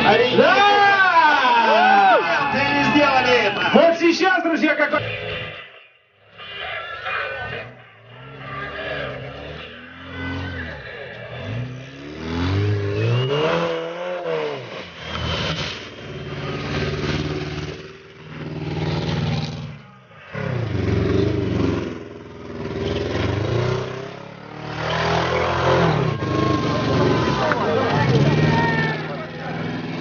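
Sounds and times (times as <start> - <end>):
engine revving hard: 7.1 - 30.0.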